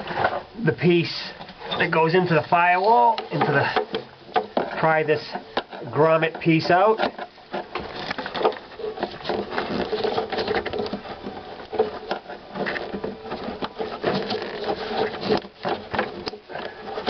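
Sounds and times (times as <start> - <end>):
tool clicking and scraping: 1.3 - 17.0.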